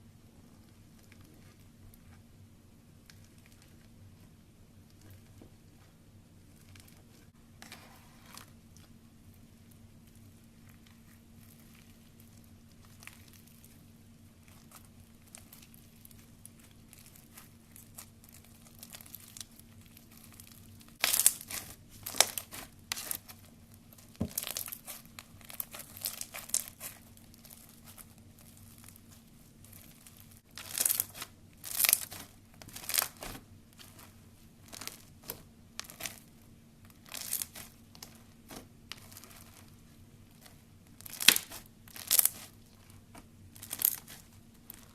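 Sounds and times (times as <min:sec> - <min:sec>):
slime crackling pops: 0:41.0 - 0:42.5.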